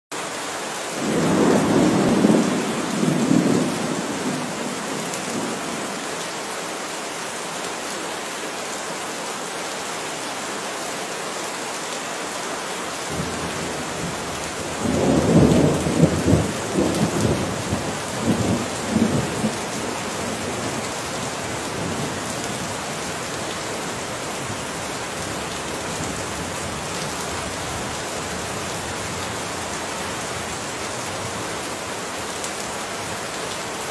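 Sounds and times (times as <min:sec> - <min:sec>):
heavy rain: 0:00.1 - 0:33.9
thunder rumbling: 0:01.0 - 0:05.9, 0:13.1 - 0:27.8.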